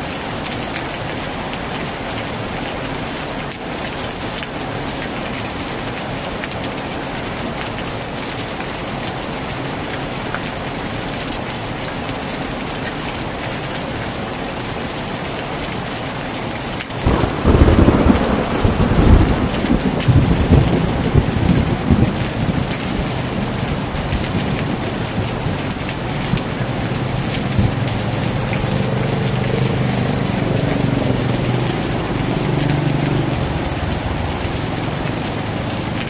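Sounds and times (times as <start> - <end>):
heavy rain on a tin roof: 0.0 - 36.0
thunder rumbling: 17.0 - 35.2.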